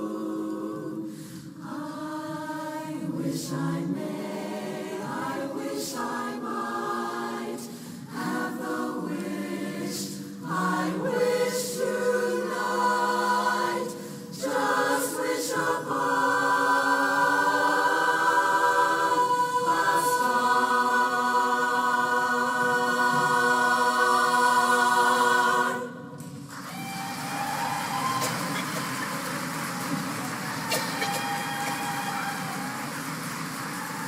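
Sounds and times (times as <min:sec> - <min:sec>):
women's chorus singing a cappella: 0:00.0 - 0:26.2
audience applauding: 0:26.4 - 0:34.0.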